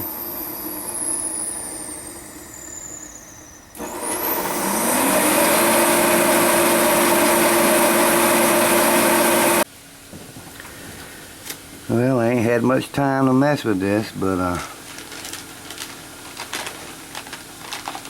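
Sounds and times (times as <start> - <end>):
heater blower motor whine: 0.0 - 9.7.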